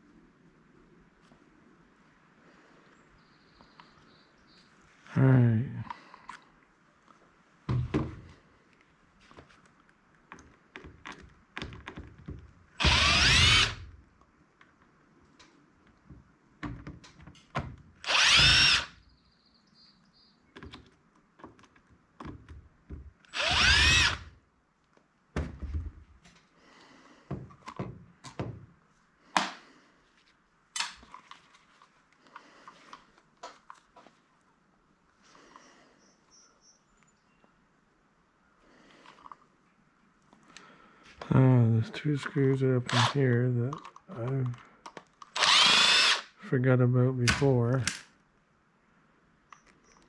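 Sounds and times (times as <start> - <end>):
clicks and knocks of plastic parts: 9.3 - 12.6, 43.6 - 45.4
power drill whining: 12.8 - 13.9, 18.0 - 19.0, 23.3 - 24.3, 42.9 - 43.2, 45.3 - 46.4.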